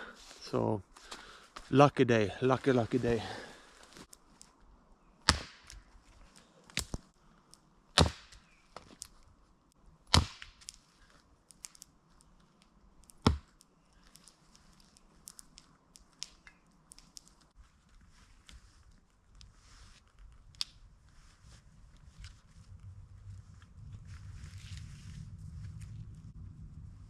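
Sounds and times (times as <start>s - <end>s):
axe chopping wood: 5.2s - 5.8s, 8.0s - 8.4s, 10.1s - 10.7s, 13.2s - 13.5s.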